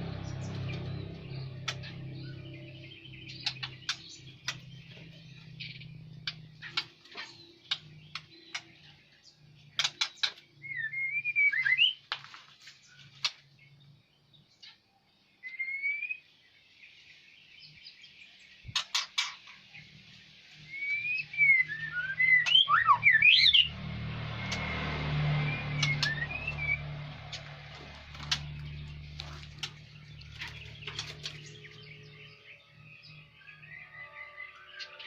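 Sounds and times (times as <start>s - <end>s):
low steady hum: 0.0s - 5.9s
birds chirping: 0.0s - 35.0s
rising whistled bird notes: 10.6s - 12.0s, 20.6s - 23.8s, 25.2s - 27.0s, 31.8s - 35.0s.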